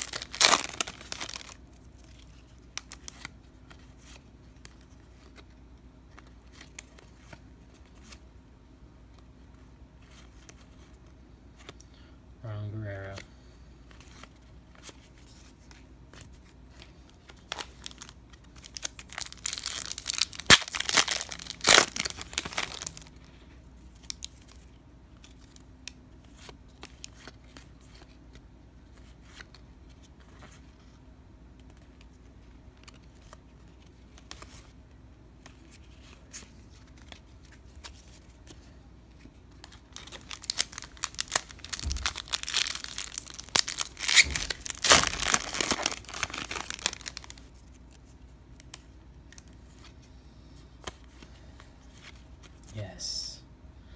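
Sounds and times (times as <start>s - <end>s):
wrappers tearing and crinkling: 0.0s - 3.3s, 17.4s - 23.2s, 39.6s - 47.9s.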